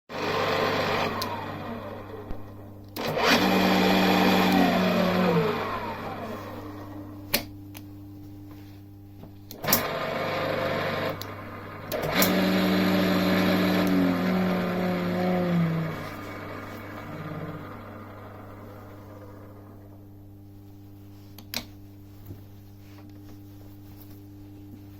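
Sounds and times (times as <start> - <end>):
drill motor running and spinning down: 3.0 - 6.4, 9.7 - 19.8.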